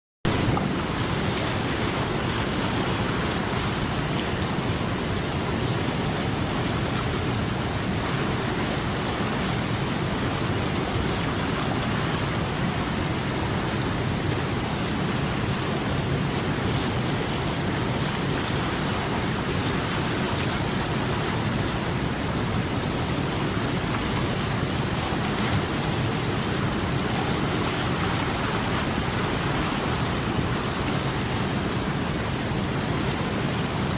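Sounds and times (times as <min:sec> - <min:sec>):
rushing water: 0:00.3 - 0:33.9.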